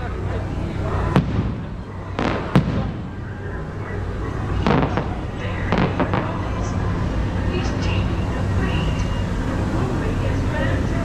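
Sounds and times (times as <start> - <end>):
low rumble: 0.0 - 11.0
fireworks bangs and crackling: 1.1 - 3.3, 4.5 - 6.8.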